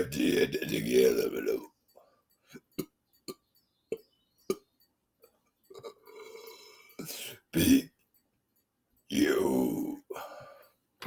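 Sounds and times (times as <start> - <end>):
man belching: 0.0 - 1.7, 5.7 - 8.0
drawn-out throat sound: 2.4 - 8.0.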